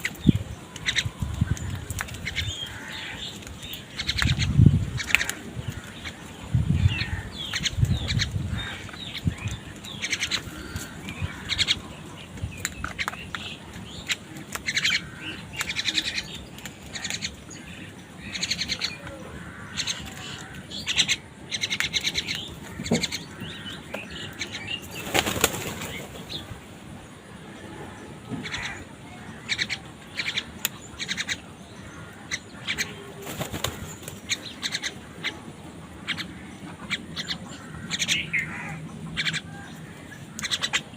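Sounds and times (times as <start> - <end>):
crows cawing: 0.8 - 3.4, 5.0 - 9.2, 10.0 - 12.0, 14.7 - 16.3, 16.9 - 25.4, 27.5 - 40.8
wings flapping: 24.8 - 26.5, 33.2 - 34.4.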